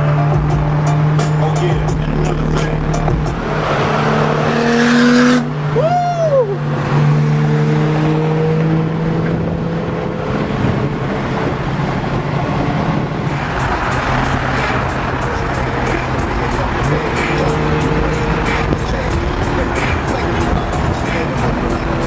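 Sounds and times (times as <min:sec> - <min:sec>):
car engines running: 0:00.0 - 0:22.0.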